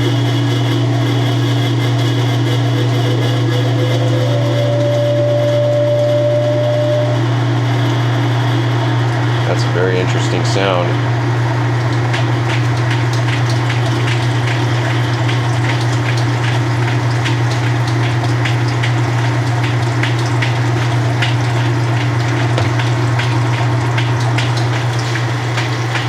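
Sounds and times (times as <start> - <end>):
washing machine motor hum: 0.0 - 26.0
ticking and crackling: 9.1 - 26.0.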